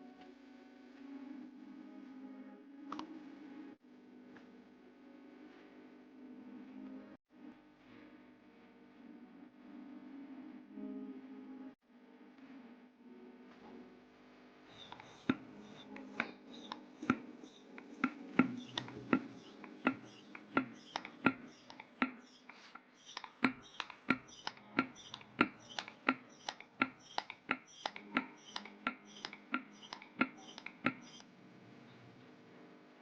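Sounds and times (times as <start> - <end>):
sharp clicks or taps: 14.9 - 31.2.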